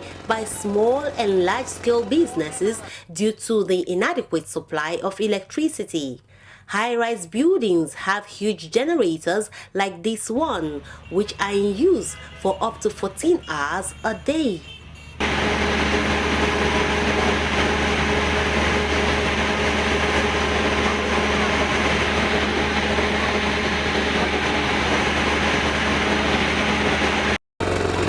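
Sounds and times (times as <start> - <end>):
generator engine drone: 0.0 - 3.0, 15.1 - 28.0.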